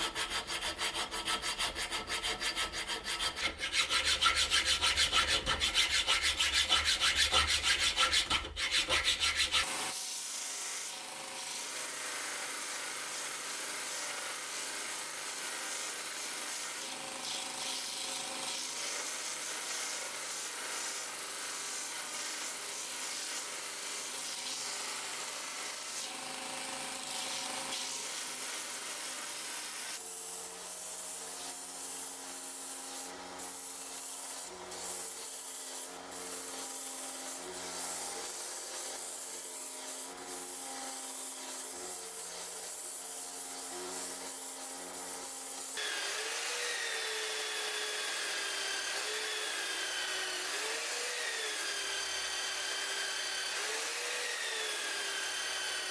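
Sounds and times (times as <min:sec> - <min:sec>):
rhythmic rasping strokes: 0:00.0 - 0:09.7
sanding rubbing: 0:00.0 - 0:10.9, 0:12.6 - 0:26.1, 0:27.2 - 0:55.9.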